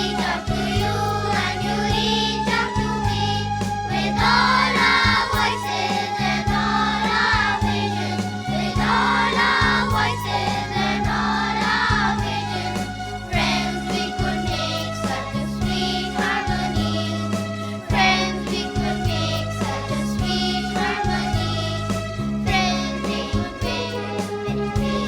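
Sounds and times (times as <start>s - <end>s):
group of voices singing: 0.0s - 25.0s
music with beat and bass: 0.0s - 25.0s.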